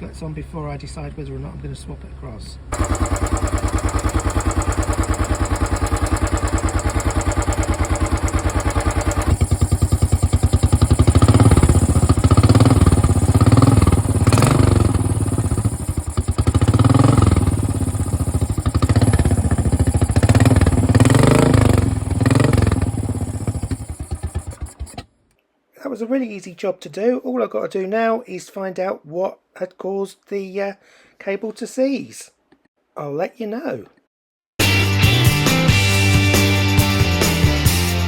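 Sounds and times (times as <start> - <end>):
motorcycle engine idling and revving: 2.7 - 25.1.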